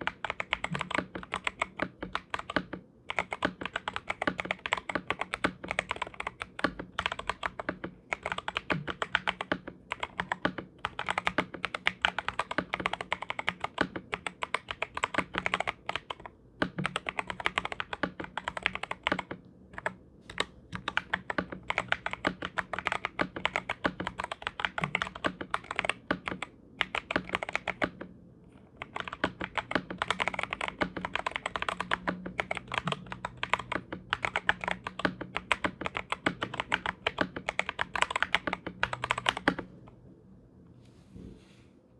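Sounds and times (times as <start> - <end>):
fast mechanical keyboard typing: 0.0 - 39.7.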